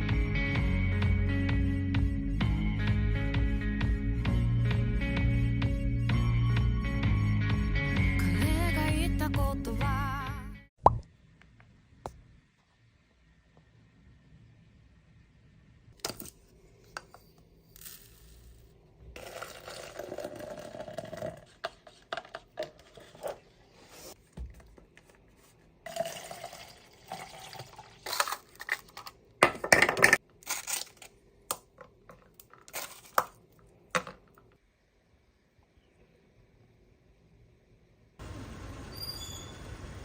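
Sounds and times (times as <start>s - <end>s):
liquid pouring: 19.2s - 21.6s, 25.9s - 28.8s.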